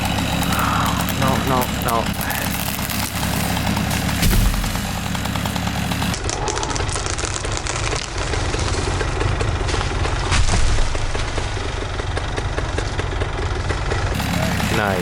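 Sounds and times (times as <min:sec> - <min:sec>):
rapid crackling snaps: 0:00.0 - 0:05.2, 0:06.1 - 0:10.3
engine running: 0:00.0 - 0:15.0.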